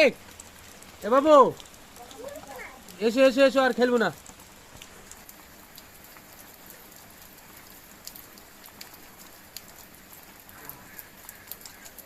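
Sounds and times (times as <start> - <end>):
steady rain falling: 0.0 - 12.0.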